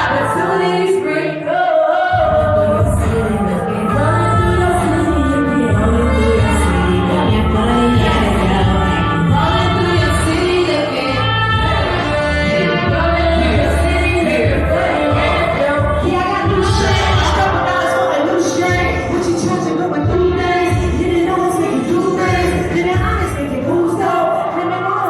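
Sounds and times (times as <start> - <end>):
person singing: 0.0 - 25.0
heavy bass line: 2.2 - 17.7
live band music: 2.2 - 24.6.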